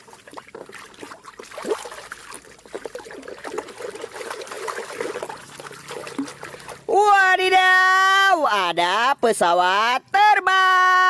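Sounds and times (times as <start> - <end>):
water trickling and splashing: 0.0 - 7.1.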